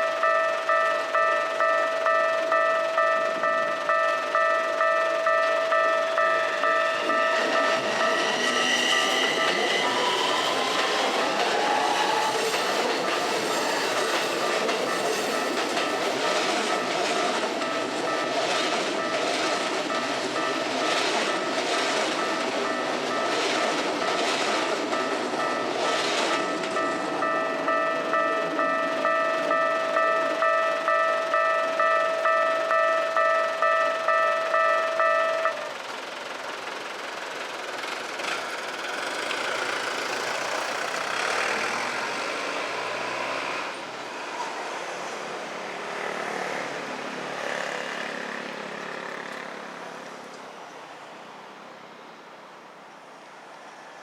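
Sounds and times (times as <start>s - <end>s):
level crossing warning bell: 0.0s - 36.0s
street noise: 0.0s - 54.0s
train wheels clattering over rail joints: 6.9s - 27.8s, 36.5s - 44.6s.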